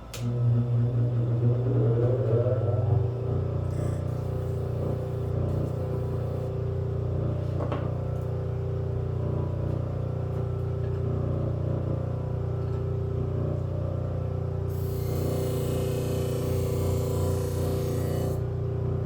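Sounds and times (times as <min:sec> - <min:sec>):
knife-sharpening machine motor hum: 0:14.7 - 0:18.5.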